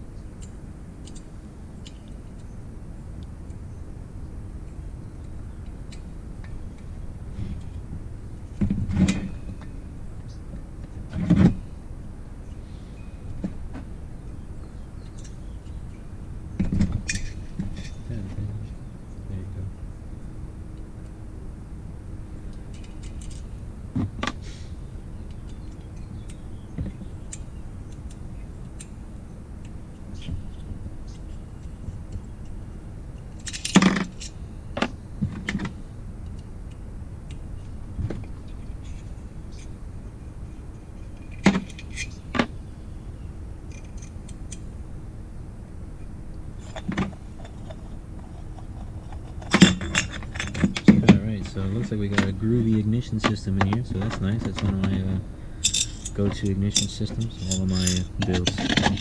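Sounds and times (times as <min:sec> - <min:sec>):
low background noise: 0:00.0 - 0:59.0
metallic clinks and knocks: 0:46.6 - 0:52.3, 0:55.6 - 0:59.0.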